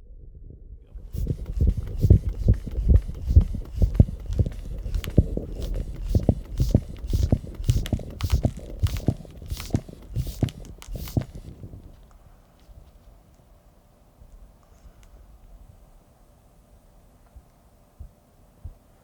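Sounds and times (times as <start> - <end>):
low pulse thumps: 0.0 - 12.0.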